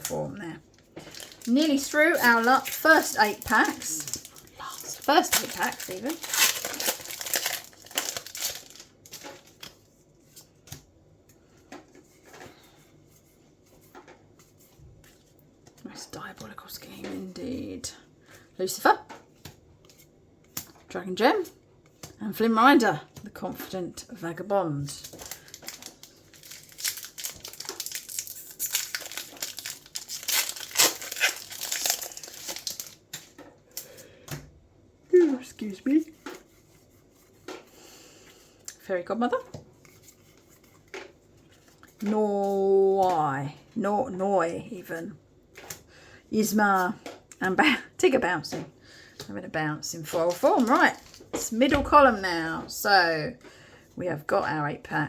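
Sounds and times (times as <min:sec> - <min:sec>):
foil wrapper crinkling: 0:00.0 - 0:09.9, 0:24.9 - 0:34.0, 0:50.3 - 0:51.4.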